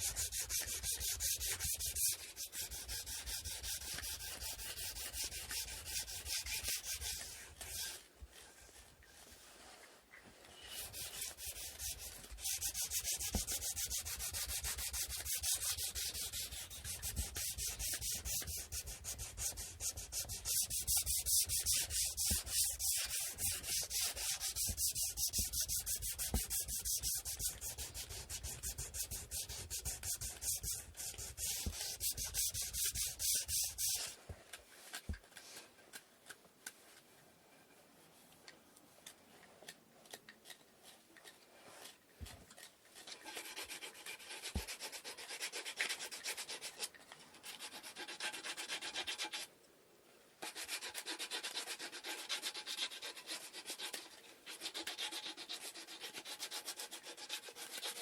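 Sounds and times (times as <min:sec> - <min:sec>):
sanding wood by hand: 0:00.0 - 0:08.0, 0:10.8 - 0:34.1.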